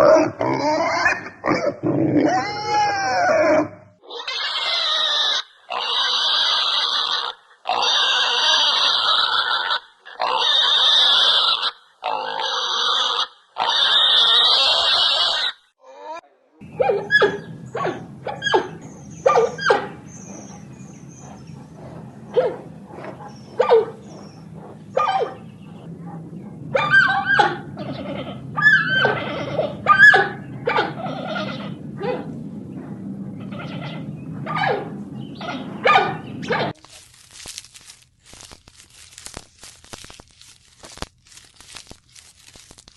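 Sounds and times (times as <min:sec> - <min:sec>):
animal crying: 0:00.0 - 0:25.4, 0:26.7 - 0:32.3, 0:33.4 - 0:36.8
low steady hum: 0:16.6 - 0:42.9
animal harsh calls: 0:26.7 - 0:32.3.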